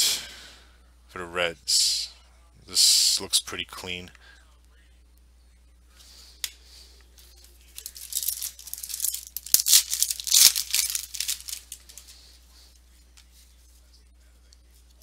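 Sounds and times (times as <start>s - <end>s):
foil wrapper tearing and crinkling: 7.8s - 12.0s.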